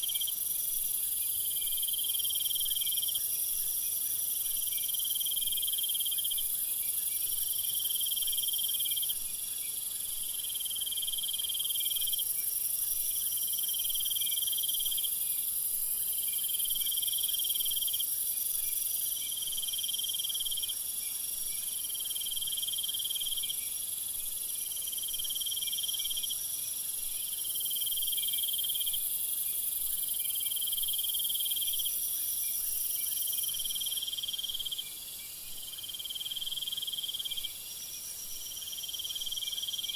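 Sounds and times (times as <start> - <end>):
crickets chirping: 0.0 - 39.9
insect trill: 0.0 - 39.9.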